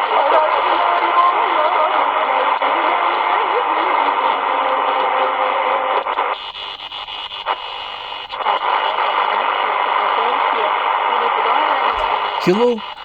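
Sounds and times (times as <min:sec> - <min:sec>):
radio static hiss: 0:05.9 - 0:13.0
radio crackles: 0:06.0 - 0:13.0.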